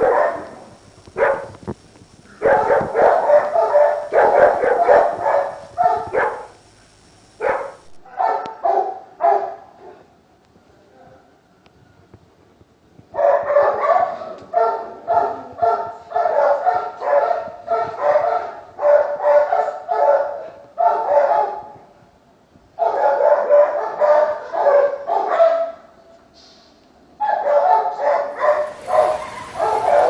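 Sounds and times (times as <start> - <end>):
dog barking: 0.0 - 1.6, 2.3 - 6.6, 7.4 - 10.1, 13.2 - 21.8, 22.8 - 25.9, 27.2 - 30.0.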